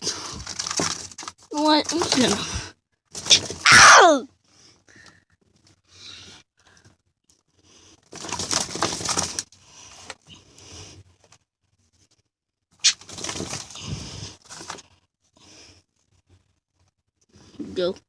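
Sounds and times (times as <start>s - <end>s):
bird flapping wings: 0.1s - 2.5s, 8.1s - 9.5s, 12.8s - 14.8s.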